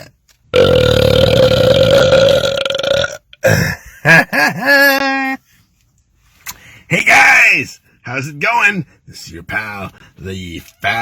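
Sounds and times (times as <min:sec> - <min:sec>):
man belching: 0:00.0 - 0:03.8.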